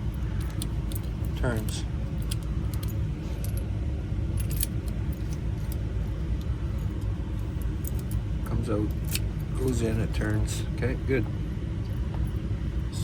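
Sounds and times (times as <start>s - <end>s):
key turning in lock cylinder: 0.0s - 3.6s, 4.4s - 10.5s
keys jangling: 0.0s - 3.6s, 4.4s - 10.4s
steady low rumble: 0.0s - 13.0s.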